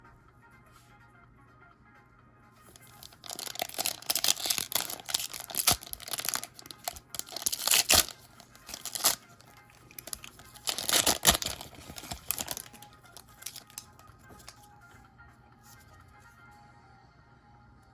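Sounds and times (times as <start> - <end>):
quiet background music: 0.0 - 17.9
foil wrapper crinkling and tearing: 2.7 - 14.6.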